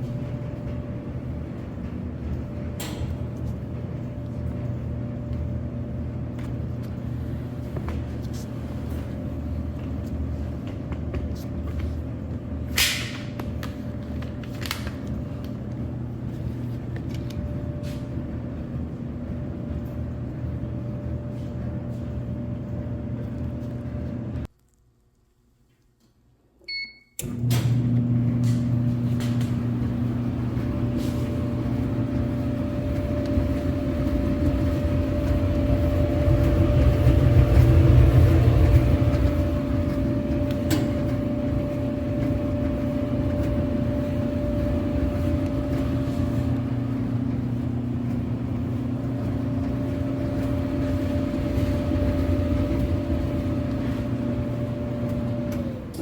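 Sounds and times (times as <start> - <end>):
clothes dryer drum humming: 0.0 - 24.5, 26.6 - 56.0.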